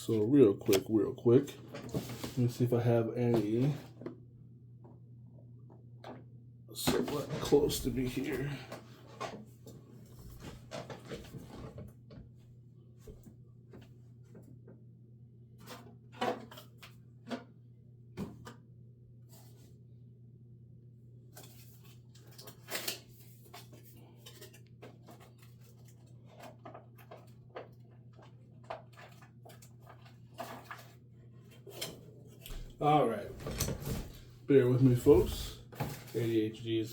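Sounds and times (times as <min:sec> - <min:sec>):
cards and containers rustling: 0:00.0 - 0:04.0, 0:21.4 - 0:32.7.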